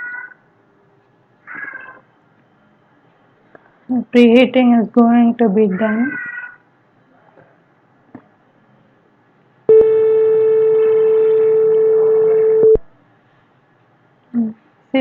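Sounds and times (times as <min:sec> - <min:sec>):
mid-pitched buzzer beep: 0:09.7 - 0:12.9.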